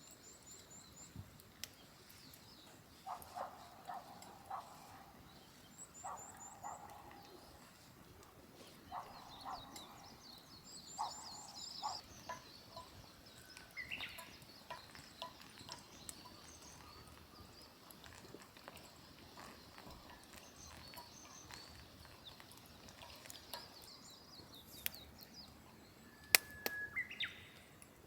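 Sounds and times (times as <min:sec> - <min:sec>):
small birds chirping: 0:00.0 - 0:27.9
faint clicks: 0:11.8 - 0:24.0.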